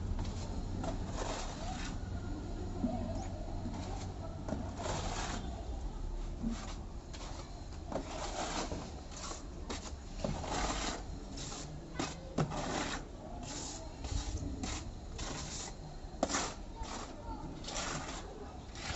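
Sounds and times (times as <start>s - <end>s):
low steady hum: 0.0s - 12.0s
hand tool scraping textured wall: 0.2s - 2.1s, 3.6s - 5.6s, 6.4s - 18.9s.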